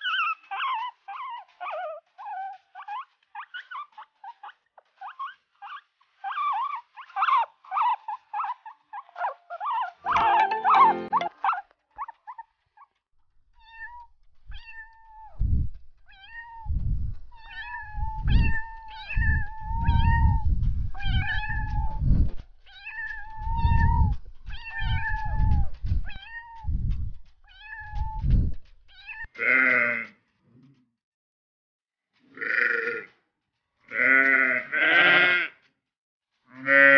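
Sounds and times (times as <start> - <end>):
cat meowing: 13.6 - 15.4, 16.1 - 16.8, 17.4 - 22.0, 22.7 - 26.8, 27.5 - 28.3
low rumble: 14.4 - 28.9
noisy animal call: 33.9 - 35.6.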